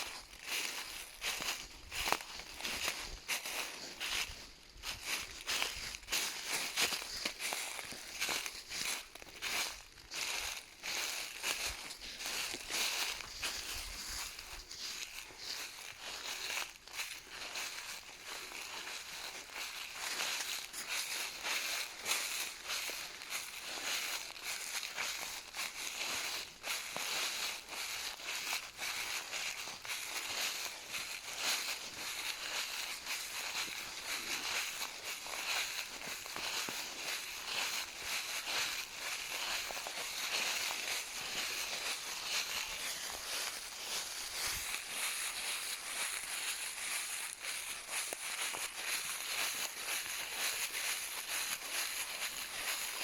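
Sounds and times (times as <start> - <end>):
footsteps crunching through dry leaves: 0.0 - 53.0.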